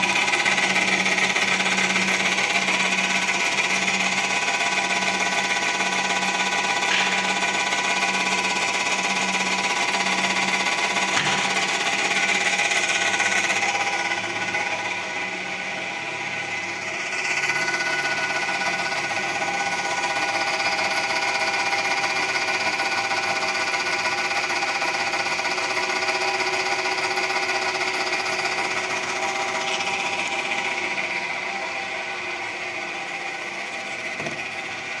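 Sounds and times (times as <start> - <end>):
electric motor running: 0.0 - 15.6.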